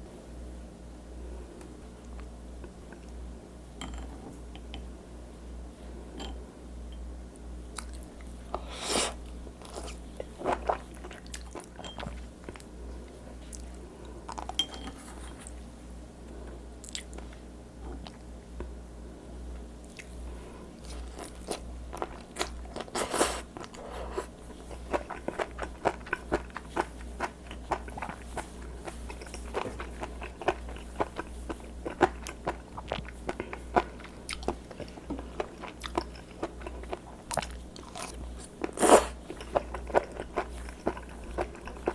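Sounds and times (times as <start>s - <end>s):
steady low hum: 0.0s - 41.9s
wet crunching chewing: 20.8s - 41.9s.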